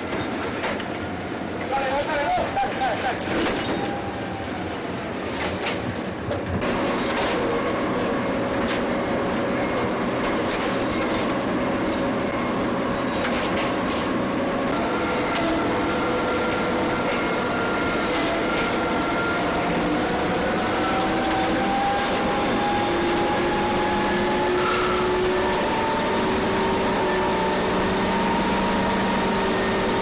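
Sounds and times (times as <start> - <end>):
engine running: 6.6 - 30.0.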